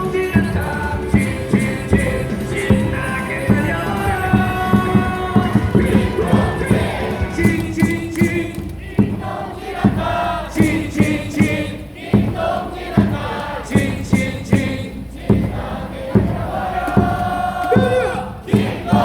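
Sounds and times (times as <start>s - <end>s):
amplified music with strong beat: 0.0s - 9.2s
crowd singing and chanting: 0.0s - 19.0s.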